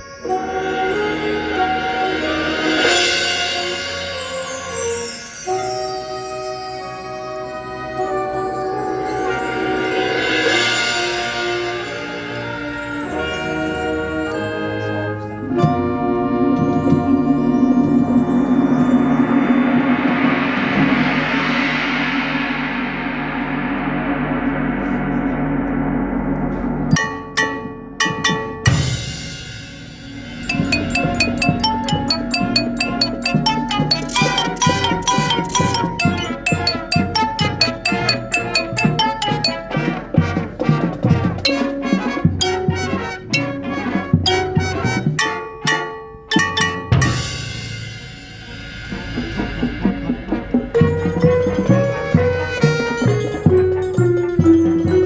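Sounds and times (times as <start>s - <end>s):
marimba notes: 0.0s - 21.9s, 26.9s - 55.0s
pitched percussion hits: 0.0s - 55.0s
brass sustained chords: 0.3s - 4.8s, 5.4s - 26.9s, 48.1s - 54.8s
held low chord: 13.0s - 26.9s
gong crash: 15.5s - 27.0s, 28.7s - 41.4s, 47.0s - 55.0s.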